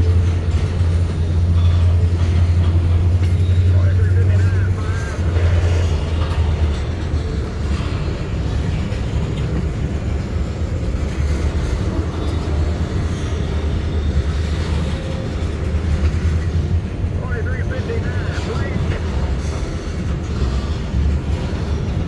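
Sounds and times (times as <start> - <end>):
diesel locomotive engine rumble: 0.0 - 22.0.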